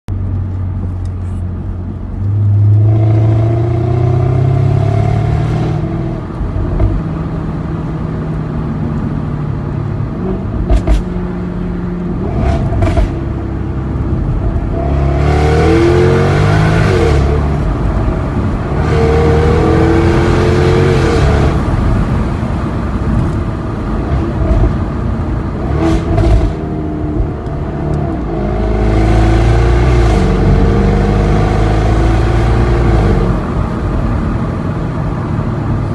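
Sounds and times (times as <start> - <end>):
car engine revving: 0.9 - 35.9.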